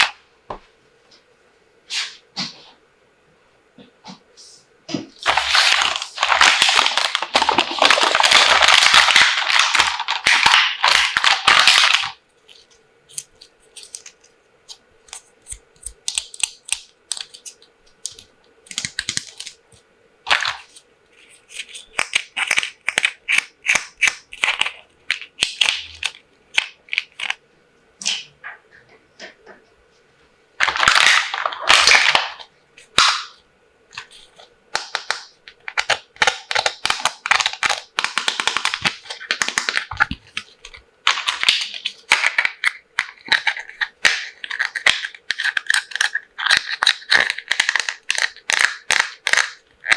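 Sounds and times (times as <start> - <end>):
packaging rustling: 5.2 - 14.3, 30.6 - 33.1, 34.0 - 49.9
plastic toys clicking and tapping: 34.8 - 40.2, 41.1 - 49.9.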